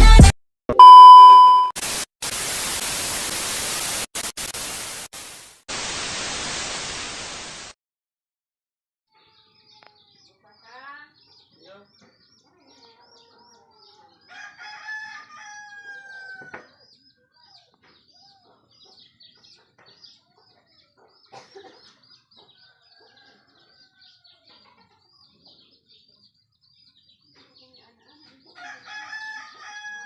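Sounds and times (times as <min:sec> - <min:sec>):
rooster crowing: 0:14.3 - 0:16.7, 0:28.6 - 0:30.0.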